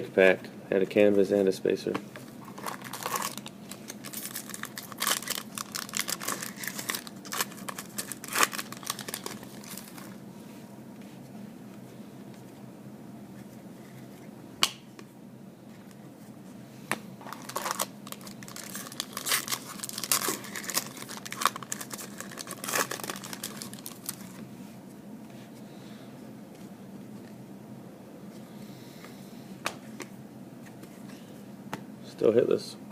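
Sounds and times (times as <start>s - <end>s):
foil wrappers crinkling and tearing: 2.4s - 10.2s, 17.2s - 24.4s.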